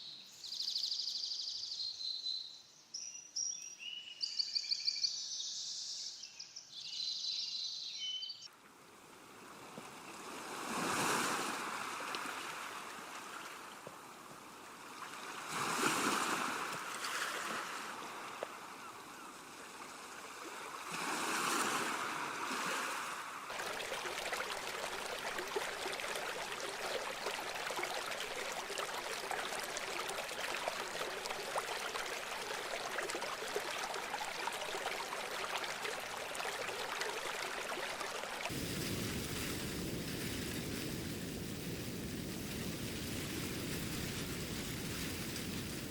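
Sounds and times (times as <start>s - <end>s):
birds chirping: 0.0s - 8.5s
brook babbling: 6.8s - 41.5s
sea waves washing ashore: 8.8s - 45.9s.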